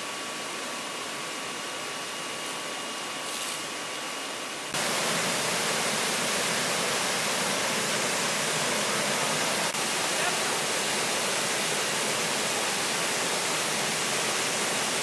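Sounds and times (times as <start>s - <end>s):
rushing water: 4.8s - 15.0s.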